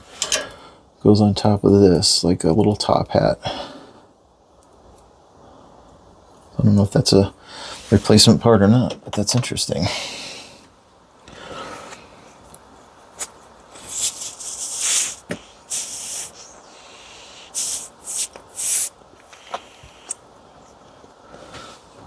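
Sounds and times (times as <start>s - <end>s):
short hissing air puffs: 13.2s - 20.2s.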